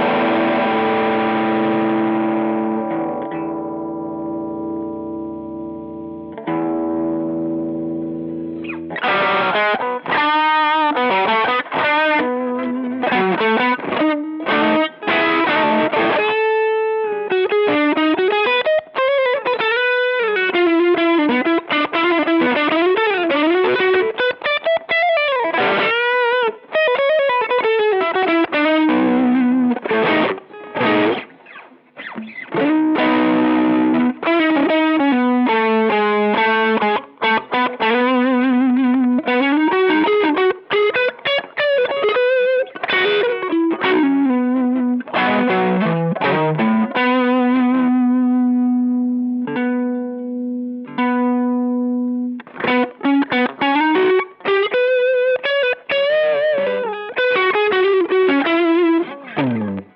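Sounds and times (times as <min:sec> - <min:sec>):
overdriven electric guitar lead: 0:00.0 - 0:59.9.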